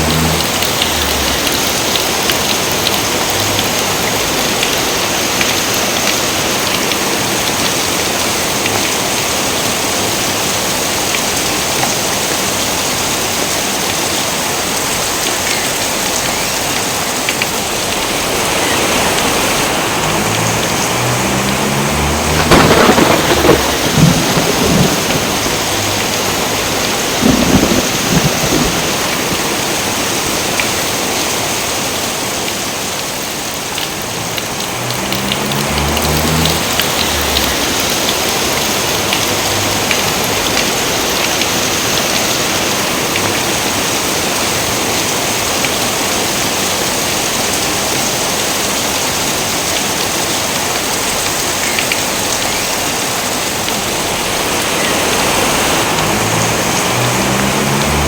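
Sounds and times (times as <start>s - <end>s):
low rolls of thunder: 0.0s - 2.4s, 20.0s - 29.6s
steady rain: 0.0s - 58.0s.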